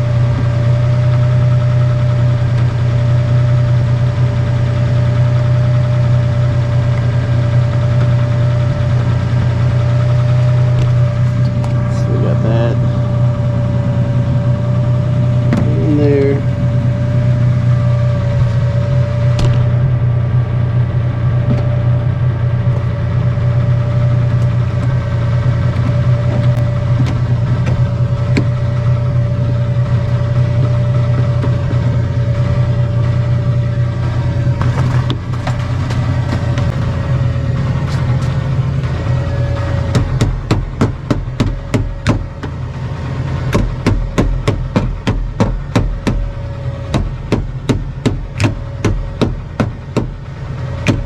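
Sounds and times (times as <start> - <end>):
low mechanical drone: 0.0 - 51.0
higher hum: 6.6 - 51.0.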